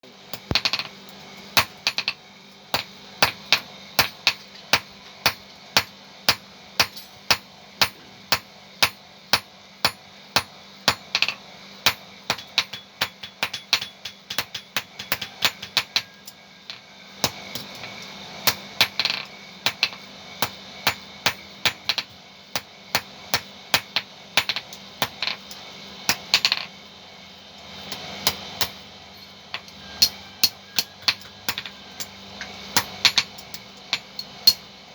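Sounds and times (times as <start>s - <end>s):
hammer striking metal: 28.2s - 32.2s.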